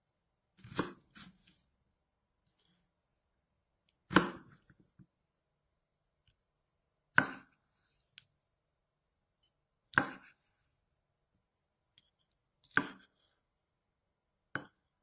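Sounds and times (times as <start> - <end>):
knife chopping on cutting board: 0.6 - 1.6, 4.1 - 4.7, 7.1 - 7.6, 9.9 - 10.4, 12.6 - 13.2, 14.5 - 14.8.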